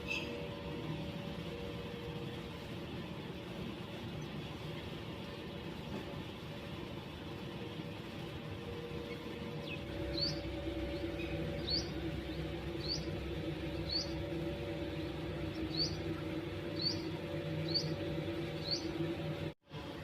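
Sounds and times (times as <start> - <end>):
steady low hum: 0.0 - 20.0
sparrow chirping: 9.6 - 14.3, 15.4 - 19.0.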